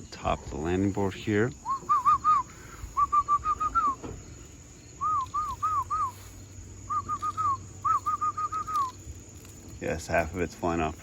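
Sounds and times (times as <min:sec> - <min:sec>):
person whistling: 0:01.6 - 0:04.1, 0:05.0 - 0:06.3, 0:06.9 - 0:09.0.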